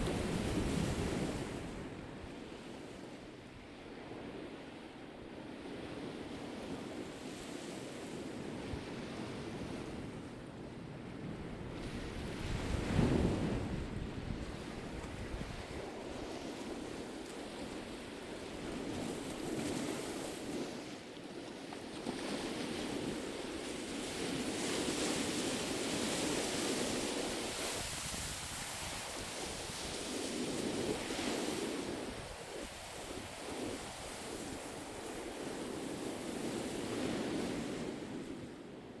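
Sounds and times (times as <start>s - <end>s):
wind blowing: 0.0s - 3.0s, 11.0s - 21.1s
sea waves washing onto shore: 0.0s - 10.5s, 11.6s - 38.8s.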